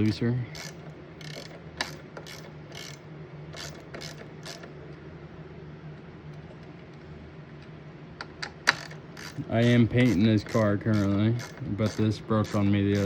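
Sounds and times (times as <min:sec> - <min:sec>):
steady low hum: 0:00.0 - 0:13.0
wrench clicking: 0:00.5 - 0:04.7, 0:08.7 - 0:13.0.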